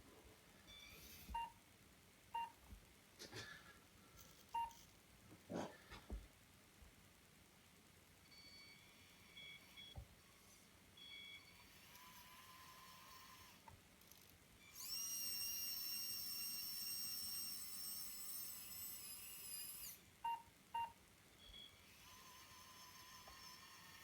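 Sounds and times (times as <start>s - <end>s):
small electric motor whining: 11.4s - 20.1s, 21.7s - 24.0s.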